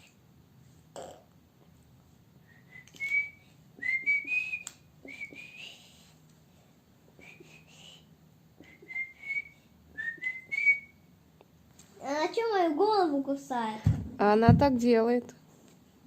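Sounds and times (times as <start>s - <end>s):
person whistling: 2.5s - 6.0s, 7.2s - 8.0s, 8.6s - 11.0s.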